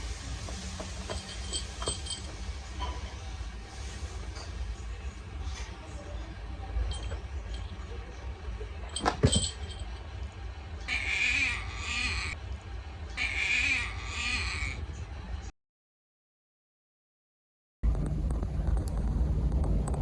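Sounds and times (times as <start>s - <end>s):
kitten crying huskily: 10.9s - 12.4s, 13.2s - 14.8s.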